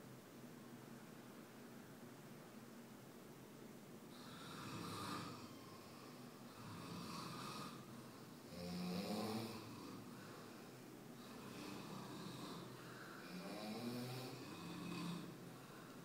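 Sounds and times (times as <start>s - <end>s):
person snoring: 4.1s - 16.0s.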